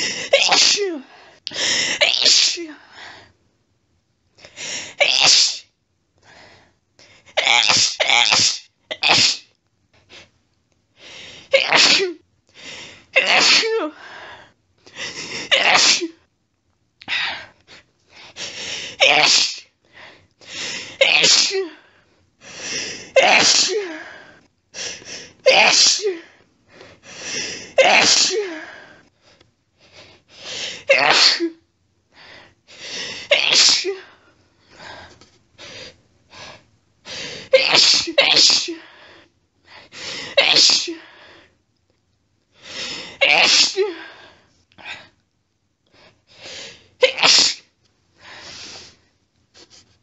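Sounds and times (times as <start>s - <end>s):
woman sneezing: 0.0s - 1.1s, 2.0s - 2.8s, 5.0s - 5.7s, 7.3s - 9.5s, 11.5s - 12.2s, 13.2s - 14.0s, 15.5s - 16.2s, 19.0s - 19.7s, 21.0s - 21.8s, 23.1s - 24.0s, 25.4s - 26.3s, 27.7s - 28.7s, 30.8s - 31.6s, 33.2s - 34.1s, 37.5s - 38.9s, 40.3s - 41.1s, 43.2s - 44.1s, 47.0s - 47.7s.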